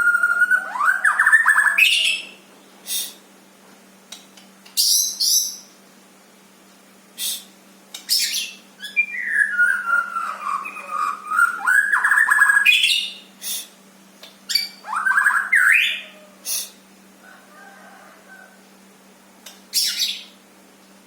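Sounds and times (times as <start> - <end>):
bird calling: 0.0 - 3.2, 8.0 - 13.6, 14.5 - 17.4, 19.7 - 20.4.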